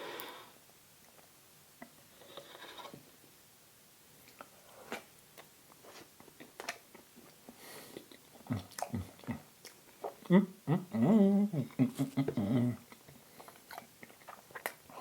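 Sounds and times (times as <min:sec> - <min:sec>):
chewing and mouth clicks: 0:04.2 - 0:10.3, 0:12.9 - 0:15.0
person humming mm: 0:10.2 - 0:13.0.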